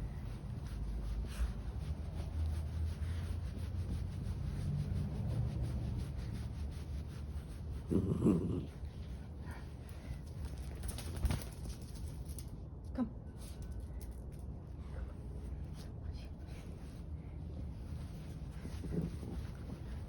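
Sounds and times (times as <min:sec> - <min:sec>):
dog grumbling: 0:07.8 - 0:08.9.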